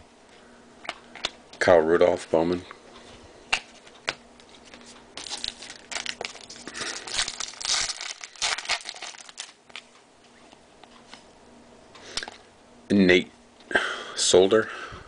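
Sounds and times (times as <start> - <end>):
plastic packaging crinkling: 4.4 - 9.9.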